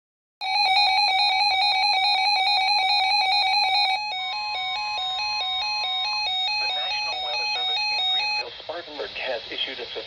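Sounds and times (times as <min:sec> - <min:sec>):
weather radio alert alarms: 0:00.5 - 0:08.4.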